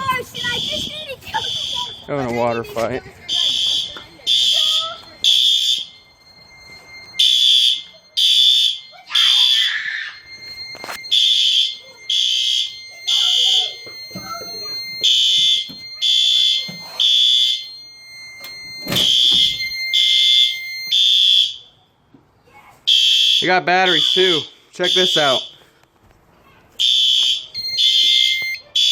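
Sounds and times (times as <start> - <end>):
steady high tone: 0.0 - 21.0
fire alarm beeping: 0.0 - 22.1, 22.9 - 25.8, 26.8 - 28.9.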